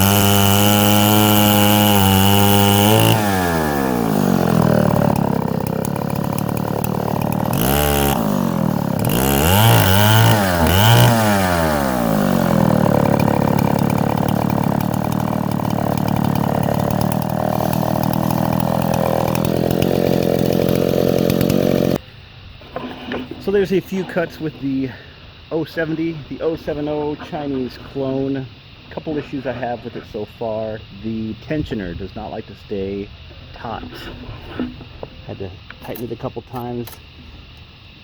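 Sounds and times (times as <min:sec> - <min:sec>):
chainsaw cutting wood: 0:00.0 - 0:22.0.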